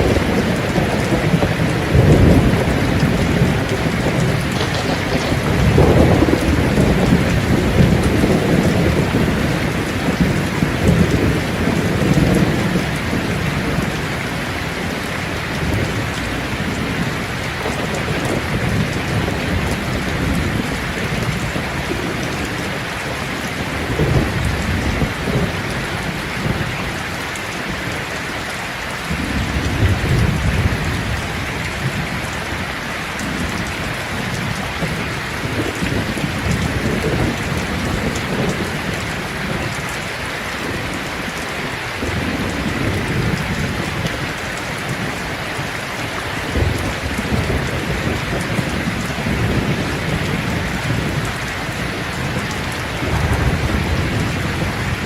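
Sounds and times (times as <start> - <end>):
steady rain falling: 0.0 - 55.0
thunder rumbling: 0.0 - 55.0.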